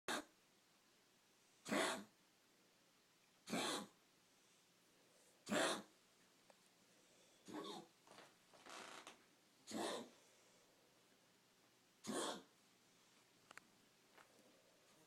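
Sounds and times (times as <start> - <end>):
pet coughing: 0.1 - 0.3, 1.6 - 2.1, 3.5 - 4.0, 5.4 - 5.9, 7.5 - 7.9, 9.7 - 10.1, 12.0 - 12.5.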